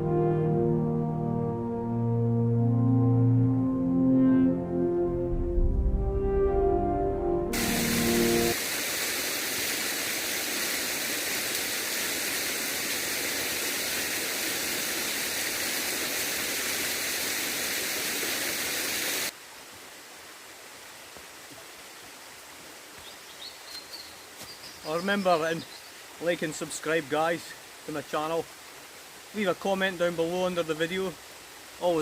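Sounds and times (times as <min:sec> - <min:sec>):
waterfall rushing: 0:07.5 - 0:19.3
faint outdoor background: 0:19.3 - 0:32.0.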